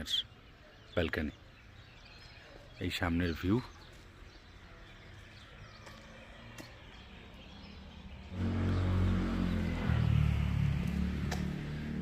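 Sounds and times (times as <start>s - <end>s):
motor vehicle engine droning: 5.9s - 12.0s.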